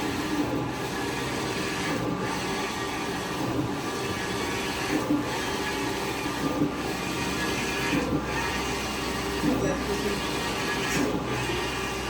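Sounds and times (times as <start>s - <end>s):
printer mechanical whir: 0.0s - 12.0s.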